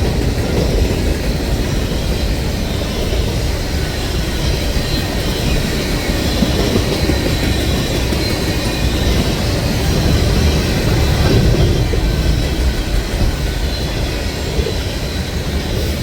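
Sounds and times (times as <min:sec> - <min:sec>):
train wheels rumbling on rail: 0:00.0 - 0:16.0.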